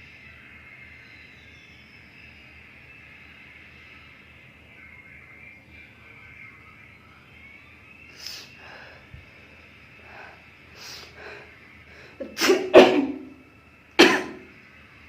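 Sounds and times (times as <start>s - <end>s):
quiet breaths: 8.1s - 12.3s
woman sneezing: 12.2s - 13.3s, 14.0s - 14.4s.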